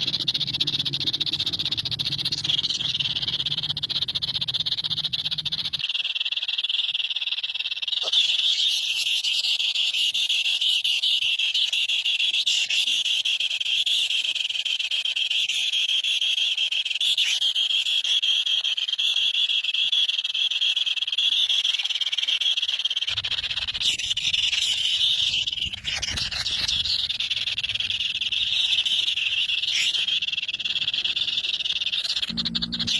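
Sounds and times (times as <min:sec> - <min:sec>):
low rumble: 0:00.0 - 0:05.8
chorus of shrill trilling animals: 0:00.0 - 0:32.9.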